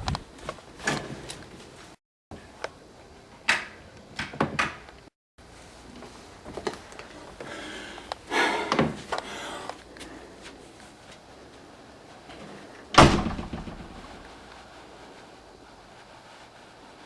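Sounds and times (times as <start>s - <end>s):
door scraping rush: 12.4s - 14.5s
door knocks and clatter: 13.0s - 14.3s.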